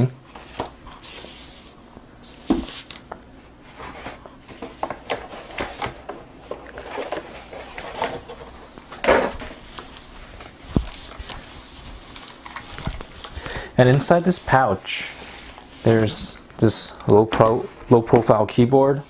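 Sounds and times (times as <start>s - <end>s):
packaging rubbing and rustling: 3.8s - 16.8s.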